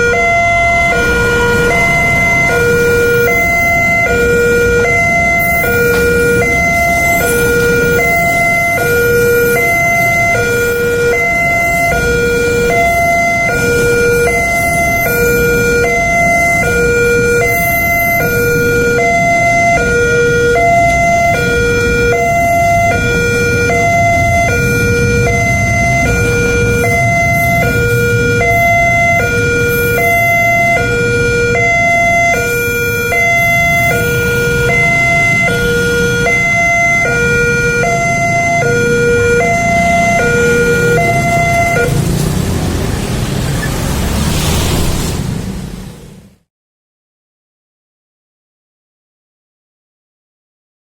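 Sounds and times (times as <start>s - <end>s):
low rumble: 0.0s - 8.1s
two-tone warning siren wailing: 0.0s - 45.1s.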